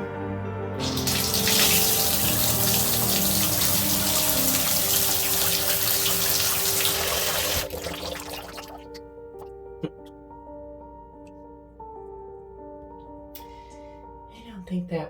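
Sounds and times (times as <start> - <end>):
background music: 0.0 - 15.0
shower water running hard: 0.8 - 8.8.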